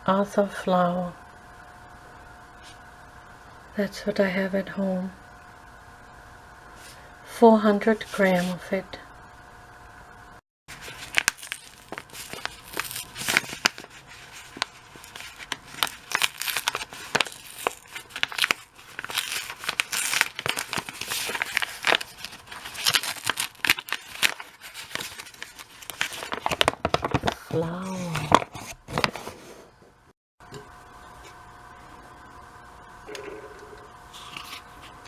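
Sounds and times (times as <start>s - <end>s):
paper bag crinkling: 10.7s - 29.4s.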